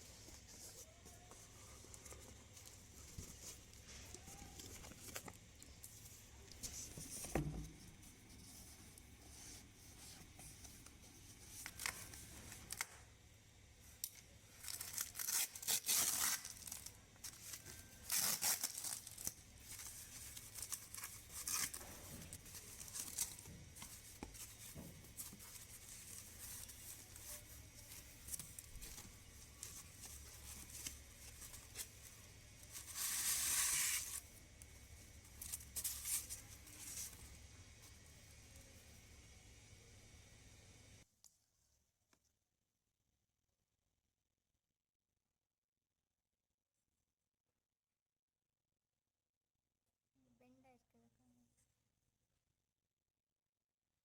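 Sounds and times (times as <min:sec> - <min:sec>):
paper or plastic tearing: 0:14.6 - 0:23.5, 0:32.8 - 0:34.2.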